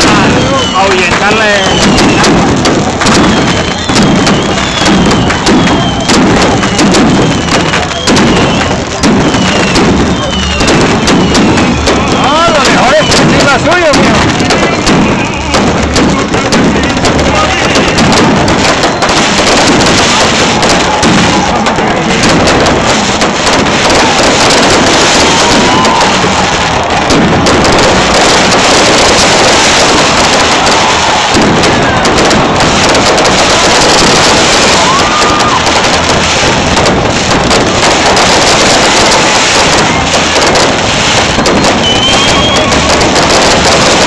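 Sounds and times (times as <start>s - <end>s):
fireworks banging and crackling: 0.0s - 44.0s
faint high whistle: 8.0s - 11.8s, 41.7s - 42.7s.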